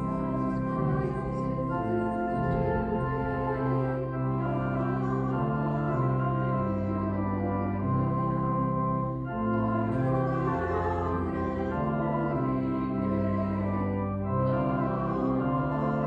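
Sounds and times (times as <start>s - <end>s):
organ playing a hymn: 0.0s - 16.0s.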